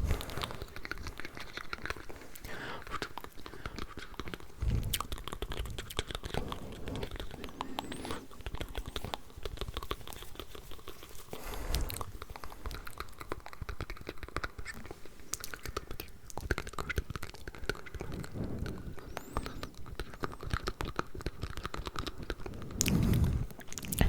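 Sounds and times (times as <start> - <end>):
wet mouth clicks and smacks: 0.2 - 24.0
soft low thumps: 4.6 - 7.3.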